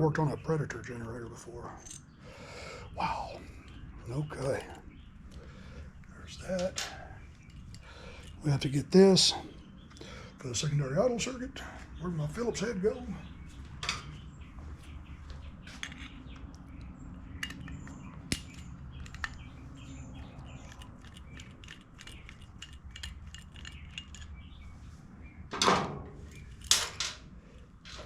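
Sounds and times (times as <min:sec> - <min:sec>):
metal tools clinking on workbench: 0:17.4 - 0:19.5, 0:20.5 - 0:24.4.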